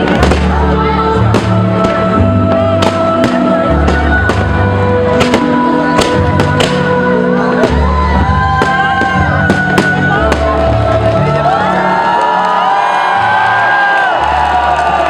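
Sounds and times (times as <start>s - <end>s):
fireworks bursting: 0.0s - 11.3s.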